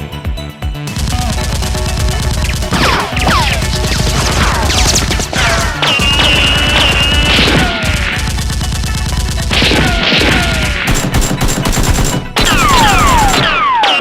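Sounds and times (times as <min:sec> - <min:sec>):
gunfire sound effects: 0:00.9 - 0:14.0
falling whistle-like tones: 0:05.8 - 0:07.6.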